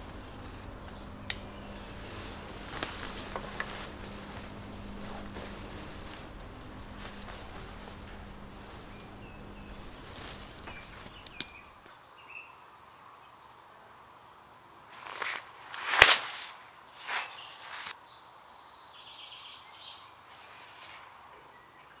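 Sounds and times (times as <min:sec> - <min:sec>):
footsteps crunching through undergrowth: 0:00.0 - 0:11.8, 0:15.0 - 0:18.0.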